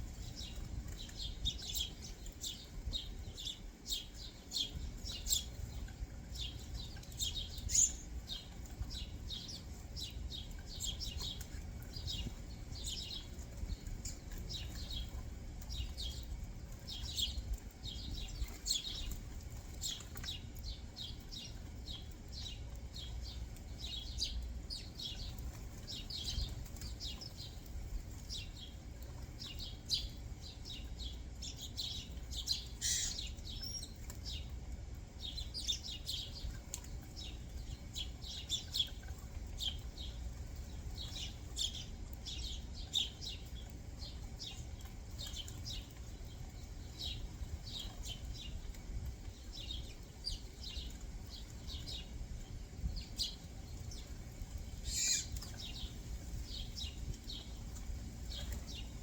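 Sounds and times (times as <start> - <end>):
songbirds chirping: 0.0 - 59.0
bird call: 54.9 - 55.3.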